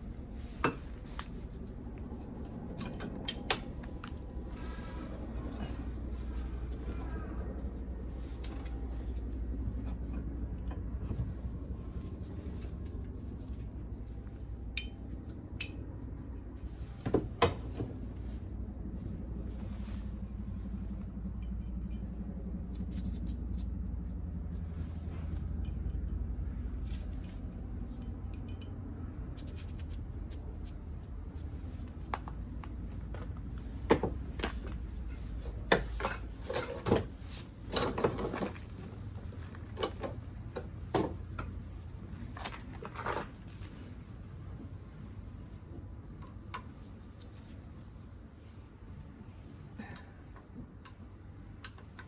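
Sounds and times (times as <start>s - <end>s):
steady low hum: 0.0s - 52.0s
metal tools clinking: 2.7s - 4.5s.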